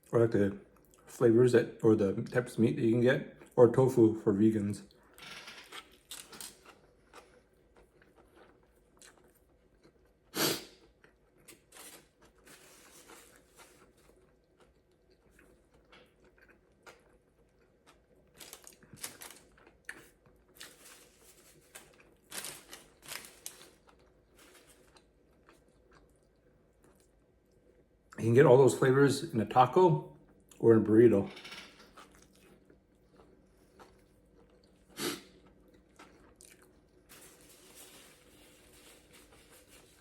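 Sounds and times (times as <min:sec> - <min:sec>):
person chewing food: 0:04.9 - 0:28.2, 0:31.8 - 0:40.0.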